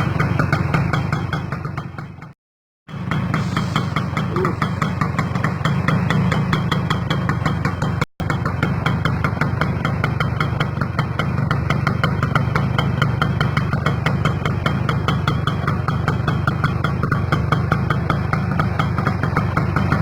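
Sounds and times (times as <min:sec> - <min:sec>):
motorcycle engine idling: 0:00.0 - 0:20.0
regular engine tick: 0:00.0 - 0:20.0.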